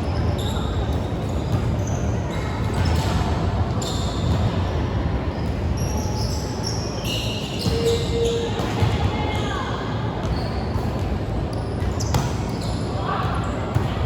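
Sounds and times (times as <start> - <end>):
shoe squeaks on court floor: 3.8 - 4.5, 5.3 - 8.6, 10.2 - 13.0.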